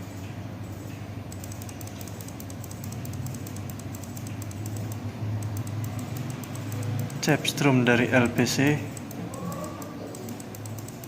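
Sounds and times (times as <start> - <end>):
steady low hum: 0.0 - 11.0
keyboard key clicks: 0.8 - 11.0.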